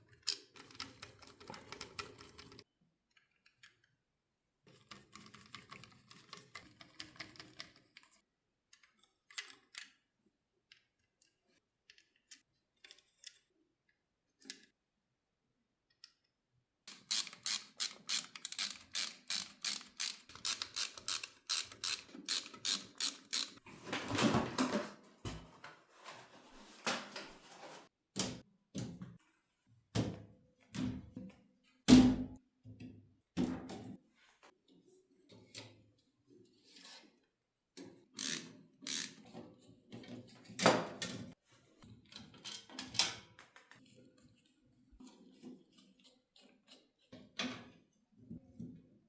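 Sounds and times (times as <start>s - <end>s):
ratcheting clicks: 16.9s - 23.6s, 38.2s - 39.2s.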